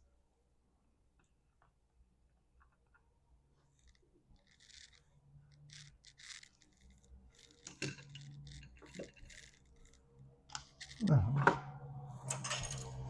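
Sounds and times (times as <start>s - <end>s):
small parts scraping and rubbing: 3.6s - 11.1s.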